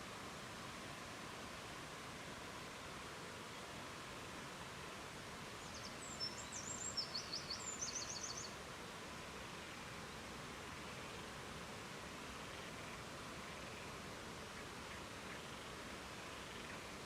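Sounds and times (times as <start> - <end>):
small bird singing trills: 5.6 - 8.5.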